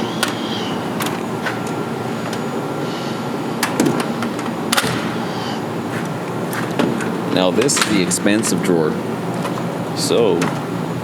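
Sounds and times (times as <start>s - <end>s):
steady background noise: 0.0s - 11.0s
sharp clicks and knocks: 3.6s - 5.4s, 6.0s - 8.6s.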